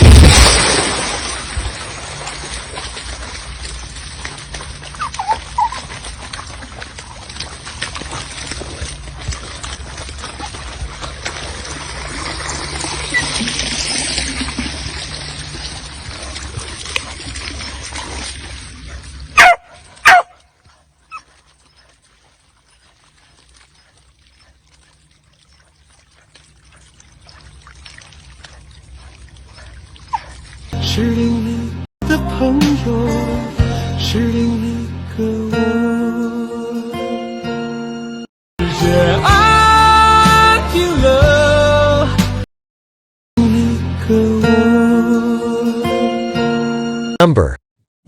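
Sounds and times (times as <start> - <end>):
dog yelp: 5.0 - 5.8, 19.4 - 20.4
dog barking: 19.4 - 20.4.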